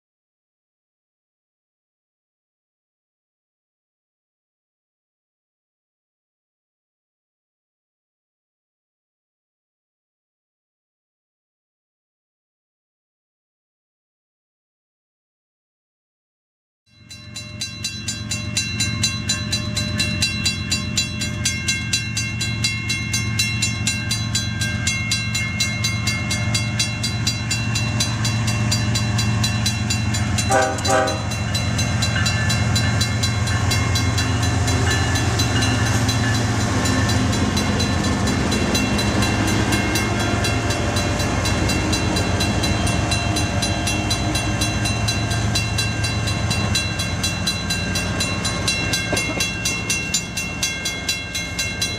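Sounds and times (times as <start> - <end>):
diesel locomotive engines running: 17.5 - 51.9.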